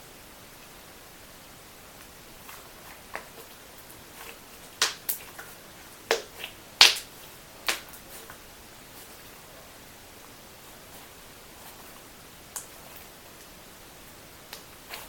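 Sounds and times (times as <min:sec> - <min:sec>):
slime clicking and popping: 0:04.8 - 0:05.4, 0:06.1 - 0:07.9.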